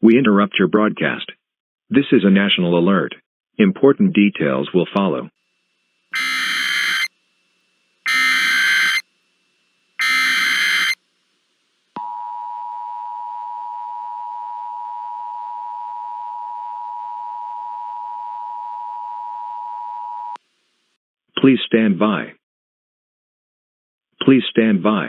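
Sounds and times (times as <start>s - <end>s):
buzzing data bursts: 6.2s - 7.1s, 8.0s - 9.0s, 10.0s - 11.0s
two-tone attention signal: 6.2s - 7.1s, 8.1s - 9.0s, 10.0s - 11.0s.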